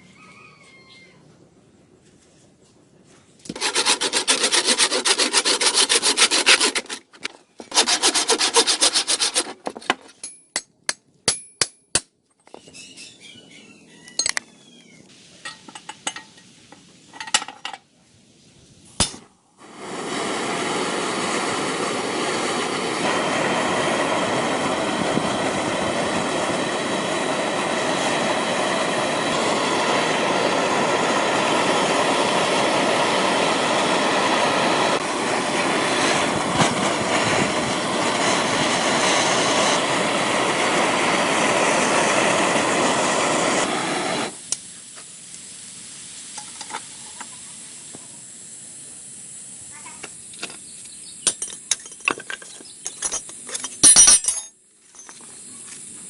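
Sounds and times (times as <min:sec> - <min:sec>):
electric power tool running: 0:03.5 - 0:07.0, 0:19.6 - 0:44.4
hand tool rasping on metal: 0:03.5 - 0:10.0.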